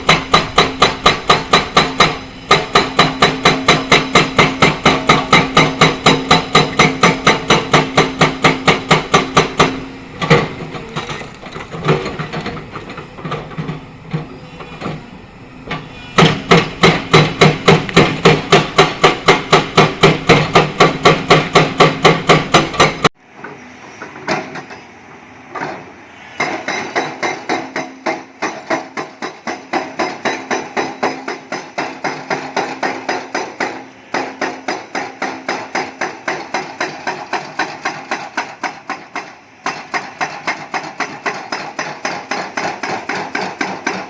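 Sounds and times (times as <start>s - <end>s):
hydraulic breaker hammering rock: 0.0s - 15.0s, 15.7s - 23.1s, 26.4s - 44.0s.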